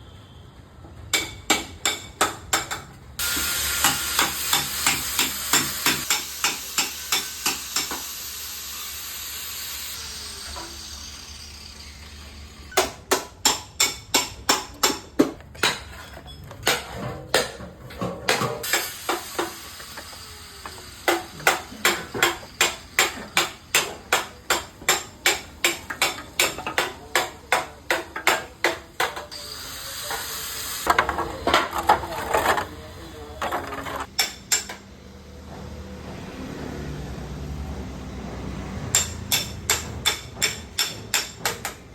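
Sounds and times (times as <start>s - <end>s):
steady hissing noise: 18.6s - 24.6s.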